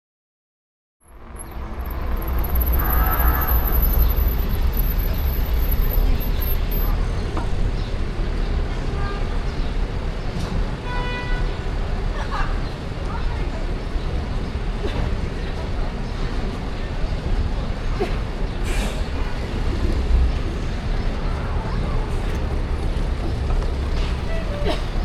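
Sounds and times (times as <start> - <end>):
traffic rumble: 1.0 - 25.0
car horn tones: 2.8 - 3.8.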